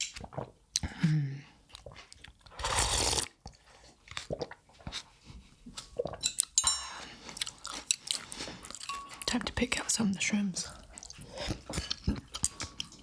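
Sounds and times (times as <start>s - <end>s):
wet chewing and mouth clicks: 0.0s - 1.0s, 1.7s - 9.5s, 10.7s - 13.0s
noodles being slurped: 1.8s - 5.1s, 10.8s - 13.0s.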